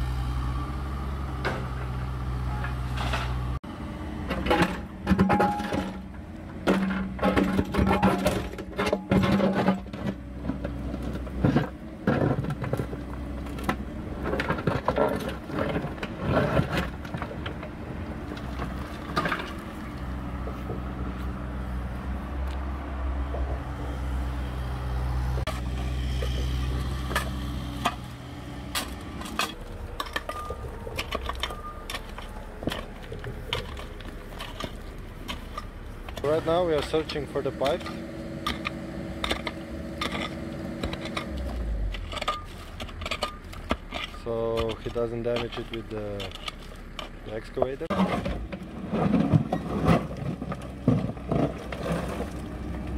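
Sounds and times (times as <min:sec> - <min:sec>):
excavator engine running: 0:00.0 - 0:52.9
bucket scraping soil and stones: 0:04.3 - 0:20.8, 0:25.4 - 0:52.9.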